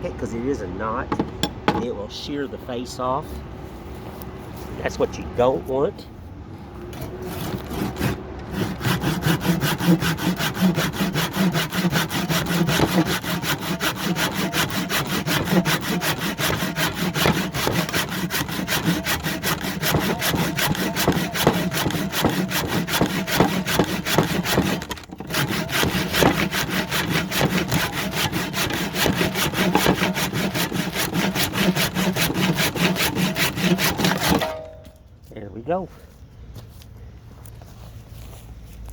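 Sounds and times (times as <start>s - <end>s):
hand saw cutting wood: 6.9s - 34.8s.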